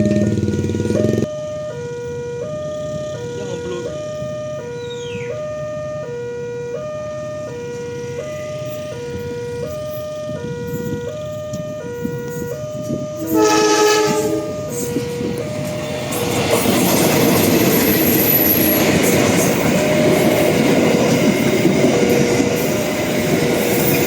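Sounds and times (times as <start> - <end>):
level crossing two-tone alarm: 0.0 - 15.9
train horn blast: 13.2 - 14.9.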